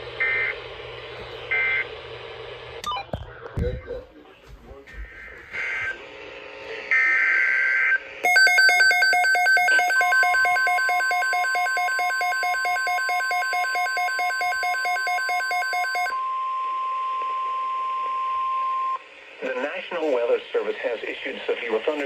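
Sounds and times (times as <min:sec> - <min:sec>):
alarm beeping rapidly: 0:08.3 - 0:16.2.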